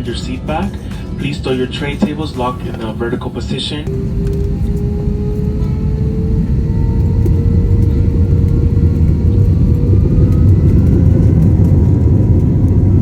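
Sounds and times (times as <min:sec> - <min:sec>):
jet engines rumbling in cabin: 0:00.9 - 0:13.0
jet engine whine: 0:01.6 - 0:13.0.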